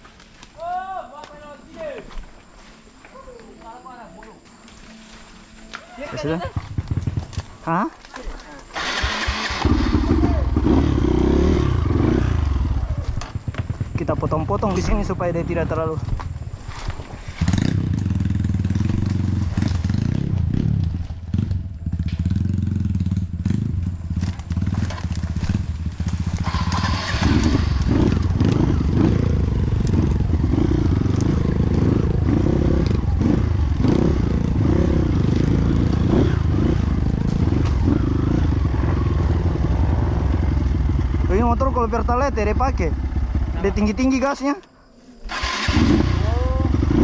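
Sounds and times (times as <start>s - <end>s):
motorcycle engine revving: 6.1s - 47.0s.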